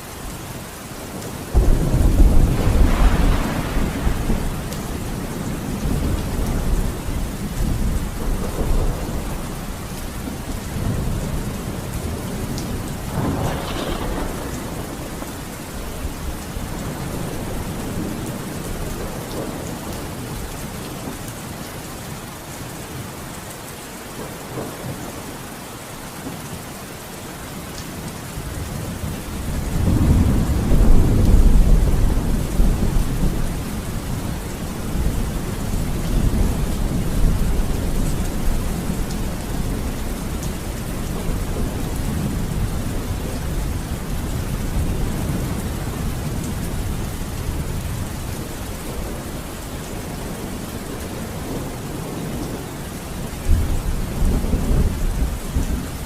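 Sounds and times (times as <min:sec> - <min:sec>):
steady rain: 0:00.0 - 0:56.0
thunder rumbling: 0:01.5 - 0:20.5, 0:28.5 - 0:52.6.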